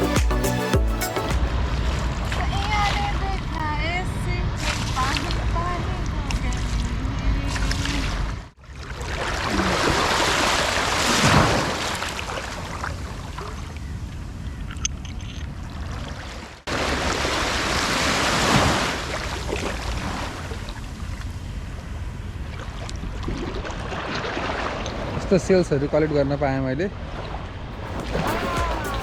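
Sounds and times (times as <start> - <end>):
sea waves breaking: 0.9 - 14.0, 15.6 - 25.2, 26.9 - 29.0.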